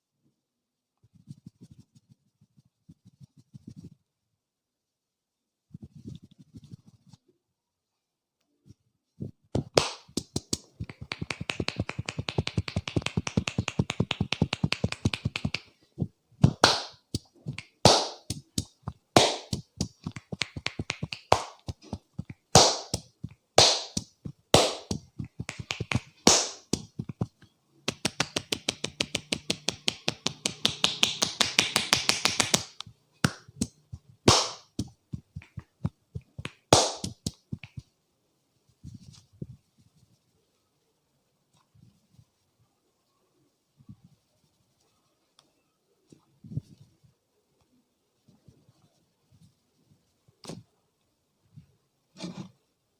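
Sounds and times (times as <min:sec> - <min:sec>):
hands slapping a head: 0:09.6 - 0:15.7, 0:16.4 - 0:37.9
hands tapping on a head: 0:09.6 - 0:15.7, 0:16.4 - 0:37.9.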